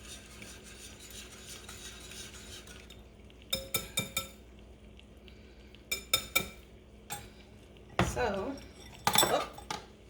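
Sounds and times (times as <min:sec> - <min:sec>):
eggs beaten in bowl: 0:00.0 - 0:04.7, 0:05.7 - 0:09.9
utensil tapping bowl: 0:03.5 - 0:04.4, 0:05.9 - 0:07.2.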